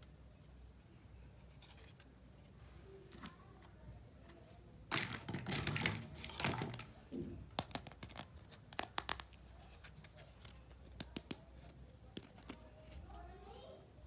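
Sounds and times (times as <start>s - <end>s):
packaging crinkling and rustling: 4.9s - 6.9s
plastic pieces tapping and clicking: 4.9s - 6.9s, 7.5s - 9.4s, 10.8s - 11.4s.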